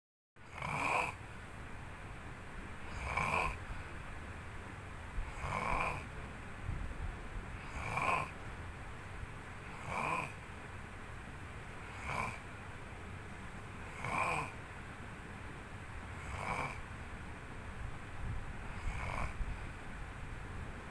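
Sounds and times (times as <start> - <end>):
person snoring: 2.9 - 3.6, 5.3 - 6.0, 7.6 - 8.3, 11.9 - 12.4, 18.7 - 19.4.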